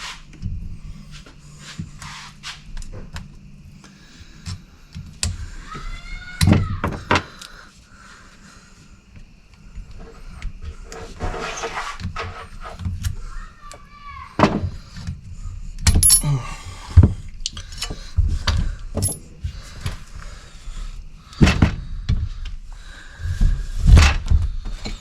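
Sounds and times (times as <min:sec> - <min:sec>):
metallic clinks of hand tools: 0:16.0 - 0:16.3.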